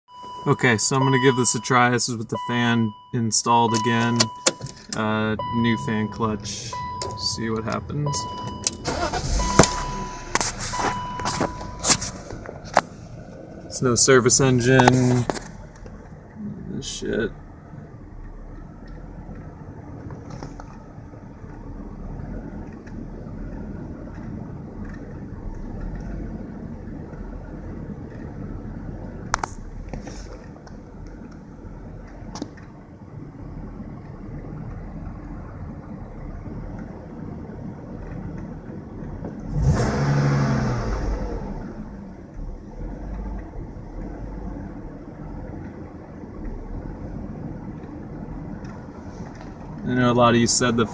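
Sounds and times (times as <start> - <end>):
car engine idling: 0.1 - 50.9
person talking: 0.4 - 8.4, 13.7 - 15.4.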